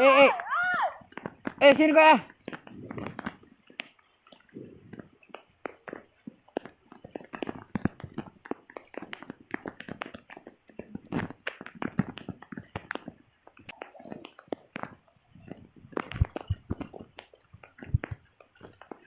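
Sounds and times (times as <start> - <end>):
small clicks and knocks: 1.1 - 19.0.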